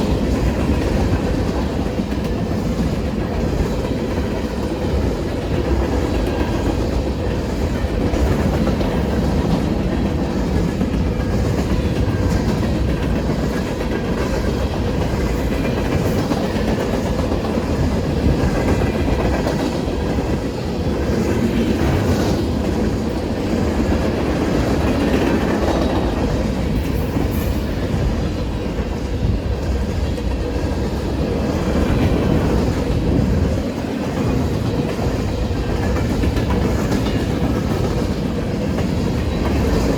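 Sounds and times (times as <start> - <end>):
freight train cars rolling: 0.0 - 39.9.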